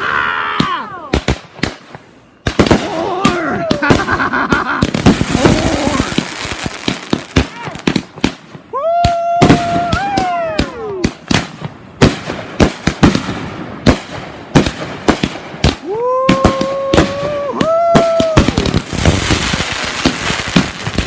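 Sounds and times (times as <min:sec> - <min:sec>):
fireworks bangs: 0:00.6 - 0:21.0
firework crackle: 0:01.1 - 0:21.0
firework whistling: 0:01.7 - 0:07.9.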